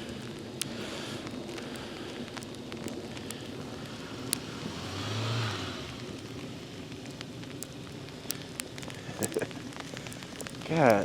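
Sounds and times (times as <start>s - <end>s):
sharp ticks: 0.0s - 11.0s
steady hiss: 0.0s - 11.0s
car engine and tyres passing: 3.2s - 8.2s.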